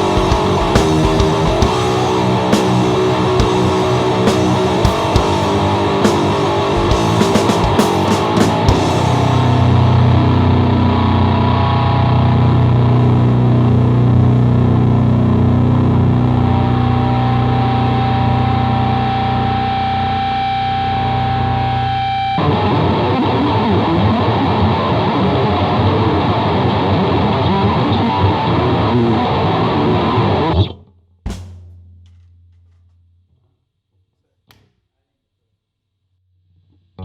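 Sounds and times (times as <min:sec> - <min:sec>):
low amp hum: 0:00.0 - 0:21.8
distorted electric guitar and bass: 0:00.0 - 0:30.8.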